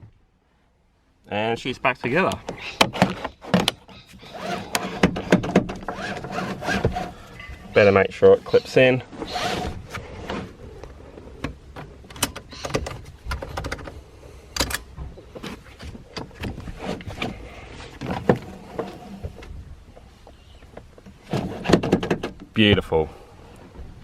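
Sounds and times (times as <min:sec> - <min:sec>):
seat belt webbing pulled: 0:02.5 - 0:07.2, 0:09.1 - 0:10.7, 0:15.4 - 0:19.3
seat belt buckle clicks and rattles: 0:11.4 - 0:17.4.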